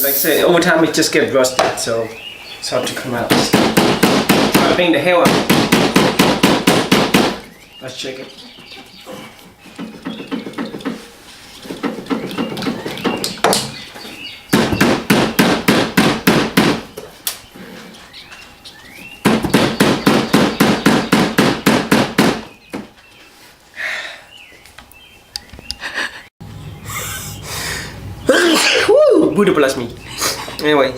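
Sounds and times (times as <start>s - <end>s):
rapid repeated tapping: 3.3s - 7.5s, 9.6s - 13.6s, 14.5s - 16.8s, 19.2s - 22.5s.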